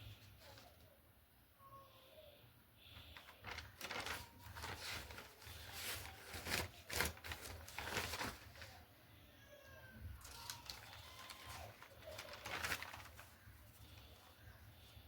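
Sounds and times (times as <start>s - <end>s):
rustles and knocks of handling: 3.2s - 8.8s.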